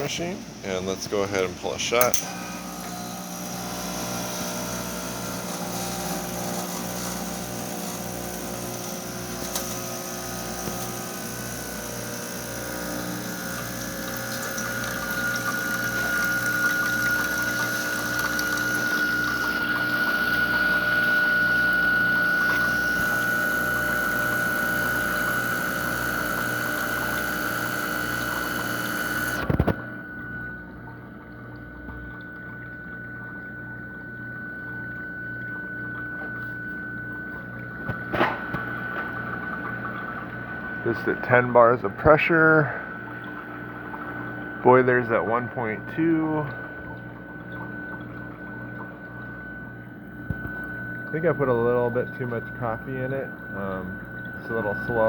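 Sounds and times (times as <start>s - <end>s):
espresso machine pump running: 0.0s - 55.0s
high whine: 29.4s - 55.0s
sharp clunk: 38.0s - 38.7s.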